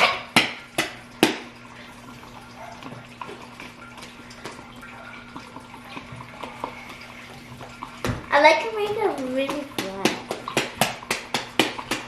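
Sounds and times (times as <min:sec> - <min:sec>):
low electrical hum: 0:00.0 - 0:12.0.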